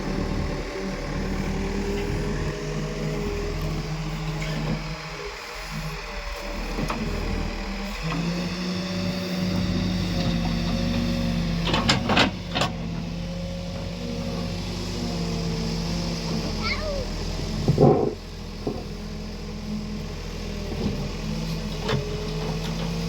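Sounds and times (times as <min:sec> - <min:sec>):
diesel engine of earth-moving machinery: 0:00.0 - 0:23.0.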